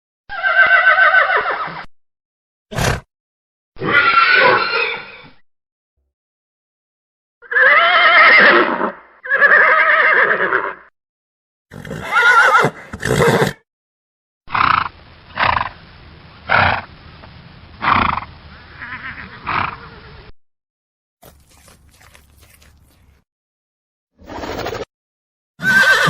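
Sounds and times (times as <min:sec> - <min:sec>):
horse whinnying: 0:00.3 - 0:01.9, 0:03.8 - 0:05.4, 0:07.4 - 0:10.9, 0:11.7 - 0:13.6, 0:25.6 - 0:26.0.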